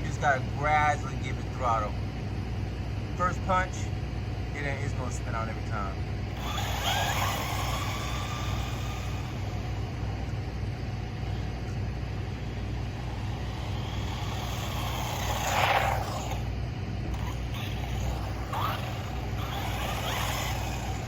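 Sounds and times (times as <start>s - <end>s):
electric motor whining: 6.2s - 21.0s.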